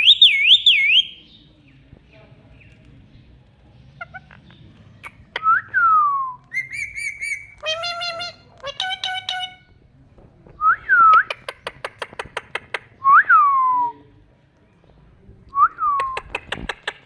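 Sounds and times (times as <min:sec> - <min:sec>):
parrot whistling: 0:06.5 - 0:08.3.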